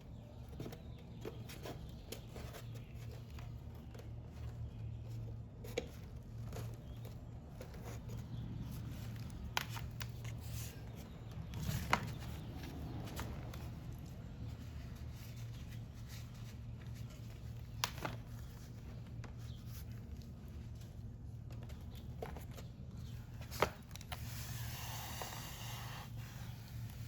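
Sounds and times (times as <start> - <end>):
rustling hiss: 24.2 - 27.0.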